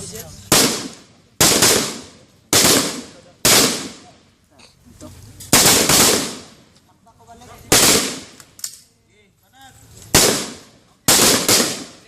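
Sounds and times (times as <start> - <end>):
rifle shots with echo: 0.5 - 4.2, 5.5 - 6.6, 7.7 - 8.4, 10.1 - 12.0.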